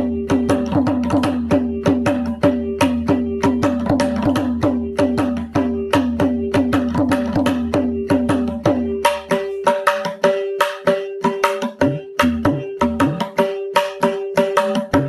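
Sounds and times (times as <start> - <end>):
mridangam drum strokes: 0.0 - 15.0.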